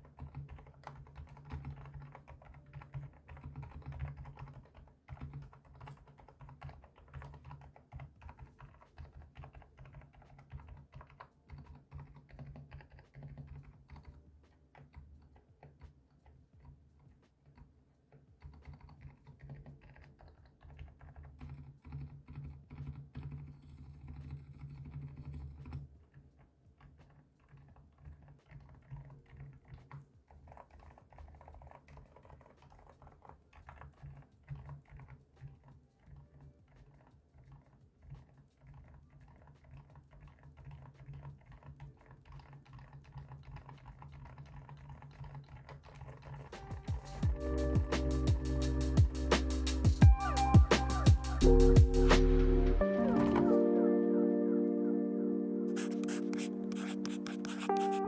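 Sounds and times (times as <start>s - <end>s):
quiet keyboard keystrokes: 0.0s - 26.2s, 52.9s - 53.7s, 55.7s - 58.0s.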